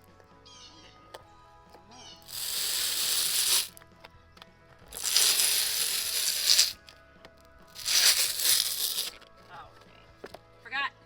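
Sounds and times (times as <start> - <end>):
background music: 0.0 - 11.0
foam mat ripping off: 2.3 - 3.8, 5.0 - 6.8, 7.7 - 9.2.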